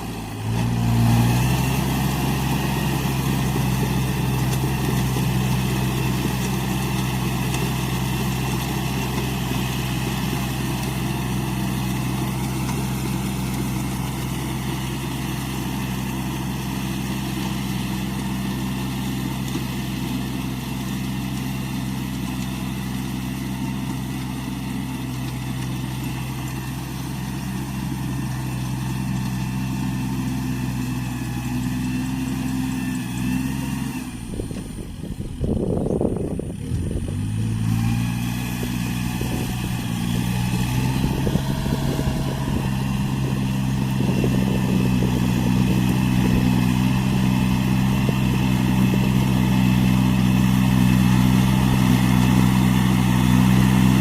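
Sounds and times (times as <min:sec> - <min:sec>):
tractor diesel engine running: 0:00.0 - 0:54.0.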